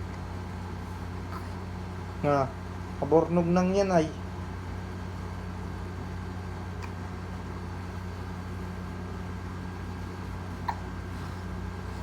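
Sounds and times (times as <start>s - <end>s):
steady low hum: 0.0s - 12.0s
baby hiccup: 10.6s - 10.9s.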